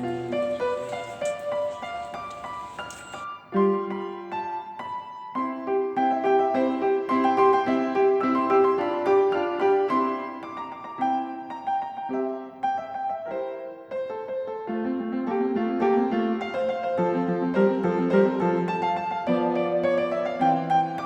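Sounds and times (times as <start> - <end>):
light piano tune: 0.0 - 21.0.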